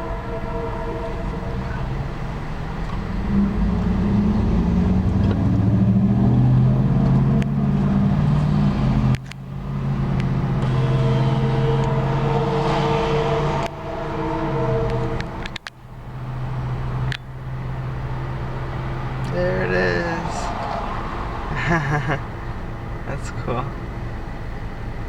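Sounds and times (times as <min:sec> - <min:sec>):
locomotive air horn chord: 0:00.0 - 0:03.7, 0:10.6 - 0:16.4
diesel engine running loudly: 0:01.2 - 0:25.0.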